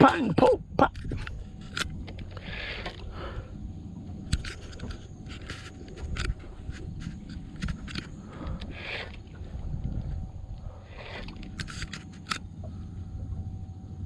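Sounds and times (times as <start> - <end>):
wind on microphone: 0.0 - 14.0
fishing reel clicks and knocks: 11.2 - 12.5.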